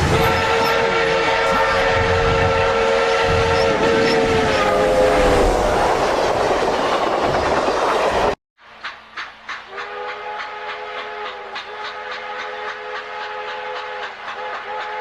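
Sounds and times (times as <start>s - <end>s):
regular train knocks: 0.0s - 15.0s
loud multi-note train whistle: 0.1s - 5.9s, 9.7s - 15.0s.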